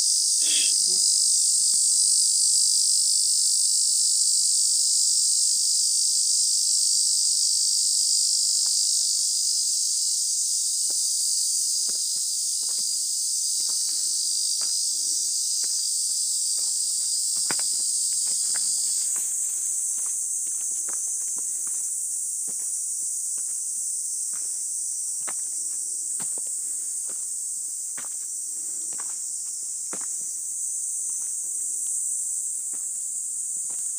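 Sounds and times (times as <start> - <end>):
cicadas singing: 0.0 - 33.9
footsteps and crunches: 10.8 - 13.0, 13.6 - 14.8, 15.6 - 23.7, 32.7 - 33.9.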